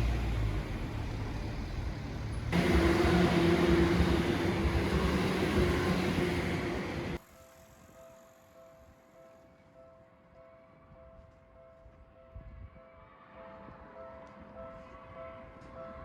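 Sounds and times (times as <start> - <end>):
passing vehicle rumble: 0.0 - 7.2.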